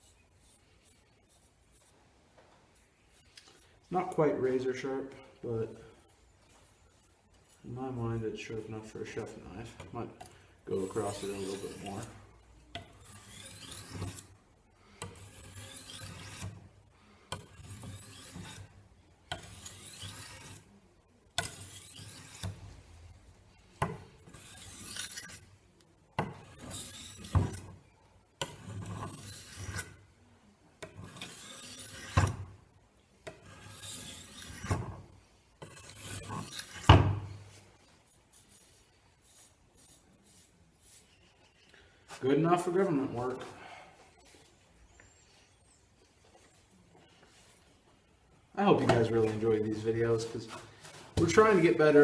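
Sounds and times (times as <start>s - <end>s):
knife on sharpening stone: 19.3s - 20.7s, 24.3s - 25.4s, 31.0s - 32.2s, 33.3s - 34.9s.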